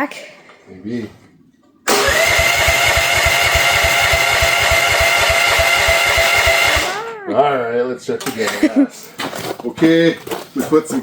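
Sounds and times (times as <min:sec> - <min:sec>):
engine cranking on starter: 0:01.9 - 0:07.0.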